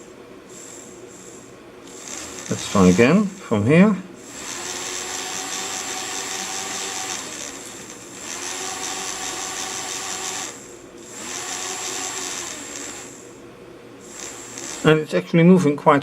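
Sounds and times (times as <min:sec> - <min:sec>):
small electric motor whining: 0:00.0 - 0:03.3, 0:04.2 - 0:13.4, 0:14.0 - 0:15.0.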